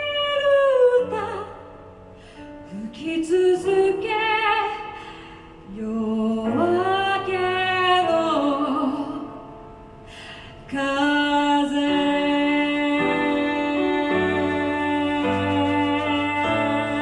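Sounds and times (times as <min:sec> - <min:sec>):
piano chords: 0:00.0 - 0:17.0
woman singing long notes: 0:10.7 - 0:17.0.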